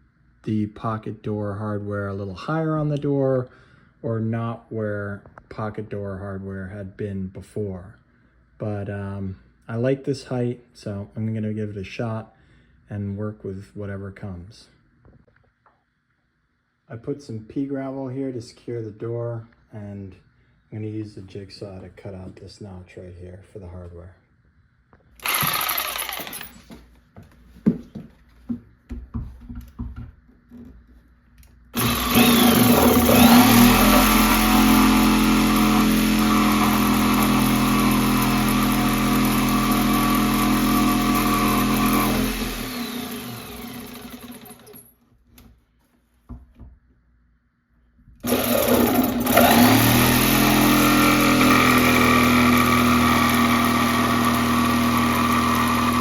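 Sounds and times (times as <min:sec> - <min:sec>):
jigsaw cutting wood: 0:25.2 - 0:26.6, 0:31.8 - 0:44.8, 0:48.2 - 0:56.0.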